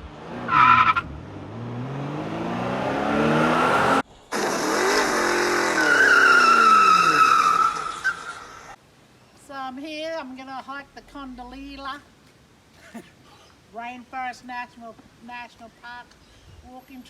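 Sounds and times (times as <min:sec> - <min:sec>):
car engine revving: 0:00.0 - 0:08.1
tire squeal: 0:00.4 - 0:01.1, 0:03.2 - 0:08.8.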